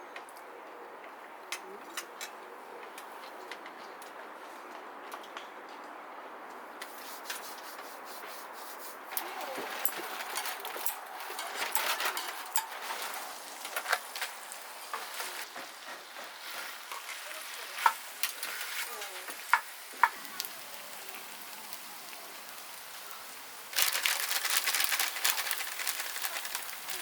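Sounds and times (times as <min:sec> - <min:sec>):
food sizzling in a pan: 0:11.3 - 0:27.0.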